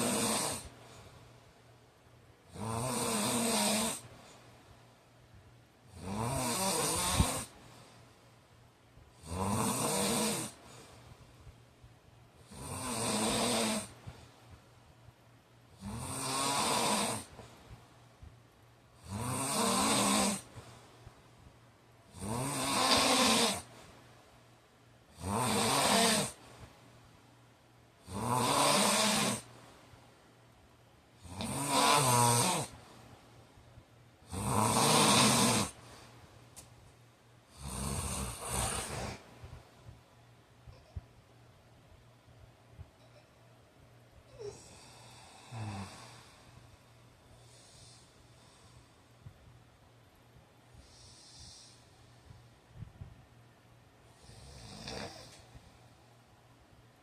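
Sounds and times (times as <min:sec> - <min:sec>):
man snoring: 0:00.0 - 0:00.7, 0:02.5 - 0:04.1, 0:05.9 - 0:07.6, 0:09.2 - 0:10.6, 0:12.4 - 0:14.0, 0:15.8 - 0:17.4, 0:19.0 - 0:20.5, 0:22.1 - 0:23.7, 0:25.2 - 0:26.4, 0:28.0 - 0:29.5, 0:31.2 - 0:32.8, 0:34.2 - 0:35.8, 0:37.5 - 0:39.2, 0:44.3 - 0:46.6, 0:54.2 - 0:55.4.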